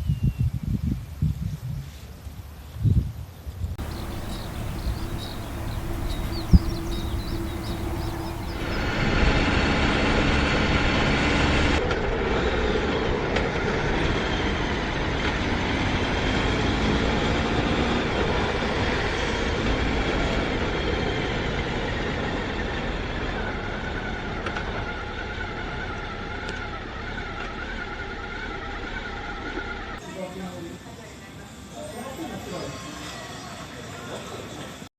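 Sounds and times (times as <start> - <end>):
motorcycle engine running: 3.8 - 9.4
rush of air noise: 3.8 - 9.5.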